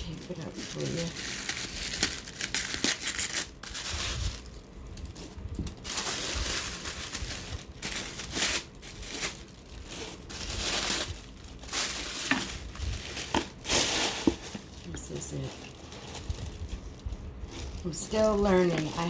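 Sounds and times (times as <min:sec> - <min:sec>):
paper packaging crinkling: 0:00.0 - 0:19.0.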